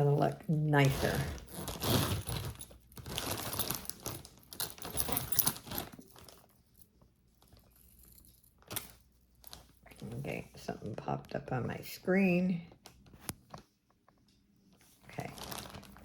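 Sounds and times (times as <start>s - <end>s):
jewelry clinking and jangling: 0.1s - 10.1s
rustling: 0.8s - 10.2s, 14.7s - 16.0s.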